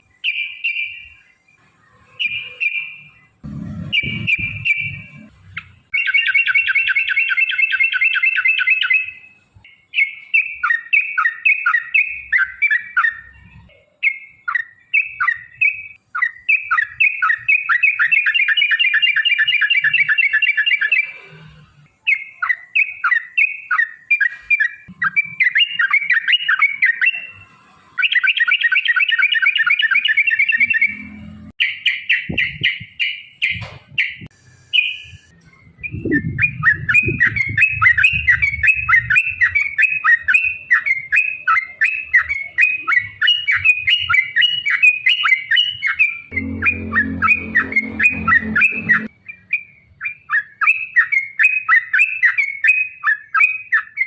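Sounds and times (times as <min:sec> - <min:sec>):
birds singing sharp chirps: 0:00.0 - 0:54.0
low rumble: 0:03.4 - 0:05.5, 0:46.3 - 0:49.1.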